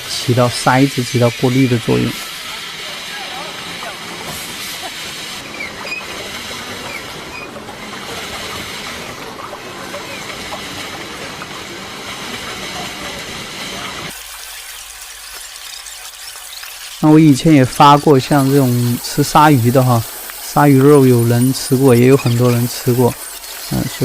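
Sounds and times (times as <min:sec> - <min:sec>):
faint voices: 0:00.4 - 0:14.1.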